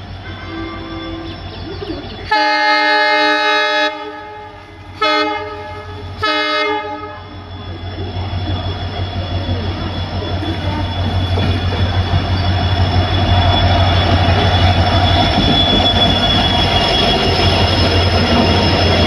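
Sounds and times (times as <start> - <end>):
locomotive air horn blasts: 0.2 - 1.3, 2.3 - 7.3.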